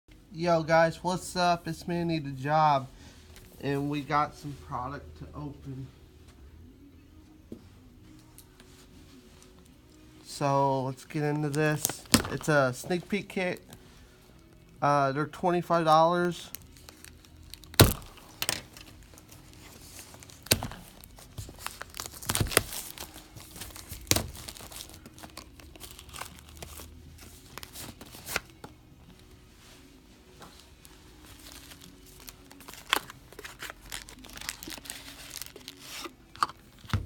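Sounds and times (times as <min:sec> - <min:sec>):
plastic wrapping tearing and crinkling: 0:11.3 - 0:12.6, 0:16.2 - 0:28.7, 0:31.1 - 0:37.0.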